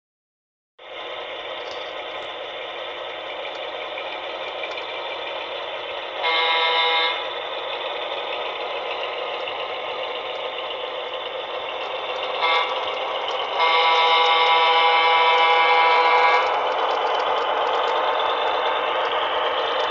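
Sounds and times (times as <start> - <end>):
diesel engine rumble from small speaker: 0.8 - 19.9
train horn blasts: 6.2 - 7.4, 12.4 - 16.6.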